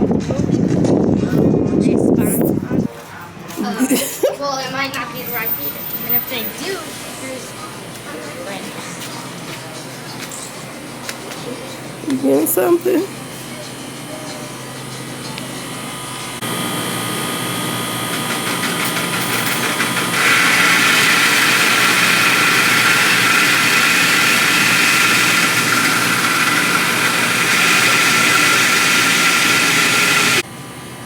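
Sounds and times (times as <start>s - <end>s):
mechanical engine running noise: 14.3s - 31.0s.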